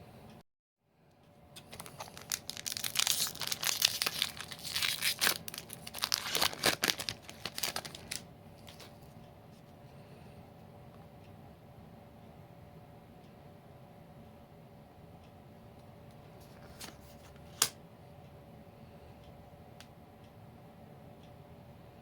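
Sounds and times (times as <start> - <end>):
foil wrapper tearing and crinkling: 1.6 - 8.2.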